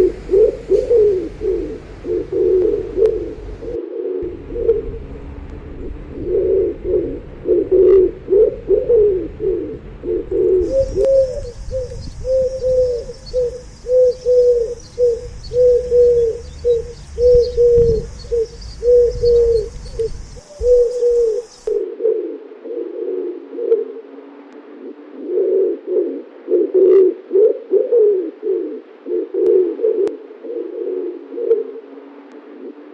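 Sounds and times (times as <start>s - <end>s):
low rumble: 0.0s - 21.8s
pigeons cooing: 0.0s - 32.9s.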